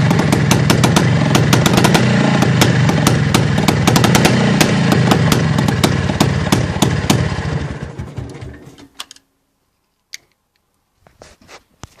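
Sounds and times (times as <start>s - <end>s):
motorcycle engine running: 0.0s - 8.7s.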